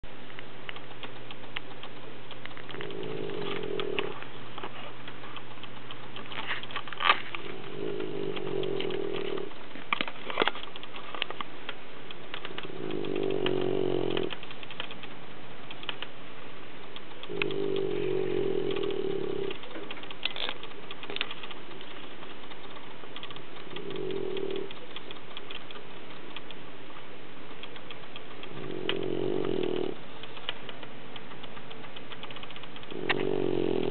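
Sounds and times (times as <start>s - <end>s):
puppy snoring: 2.5s - 5.0s, 7.3s - 9.6s, 12.4s - 14.9s, 17.2s - 22.0s, 23.6s - 24.9s, 28.4s - 30.5s, 32.2s - 33.9s
short clicks: 16.8s - 33.9s.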